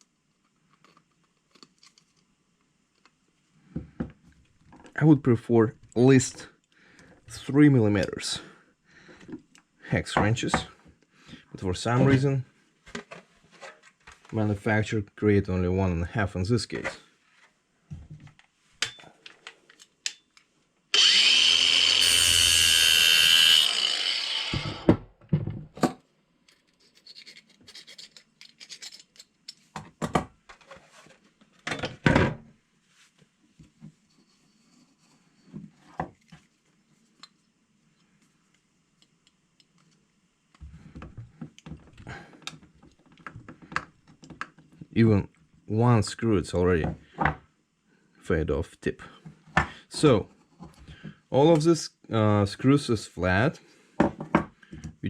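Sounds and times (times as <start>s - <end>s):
small power tool grinding: 20.9s - 25.0s
small metal parts clicking: 26.5s - 29.6s.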